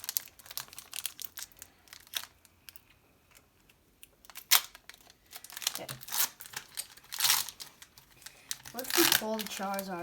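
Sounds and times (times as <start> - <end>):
packaging clicks and crackles: 0.0 - 10.0
loud packaging snap: 4.3 - 5.0.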